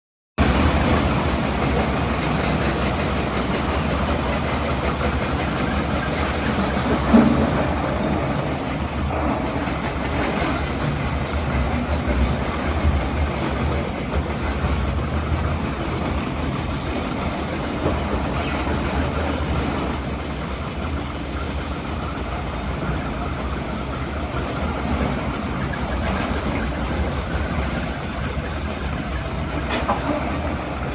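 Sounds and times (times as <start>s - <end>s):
heavy vehicle engine rumbling: 0.4s - 30.9s.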